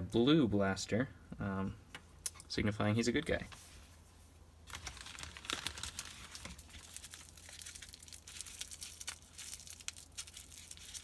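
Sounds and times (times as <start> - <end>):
packaging crinkling: 4.7 - 11.0.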